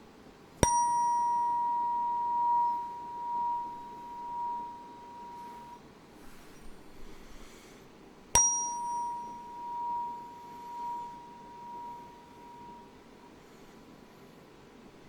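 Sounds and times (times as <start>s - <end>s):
tuning fork ringing: 0.6s - 5.8s, 8.4s - 13.4s.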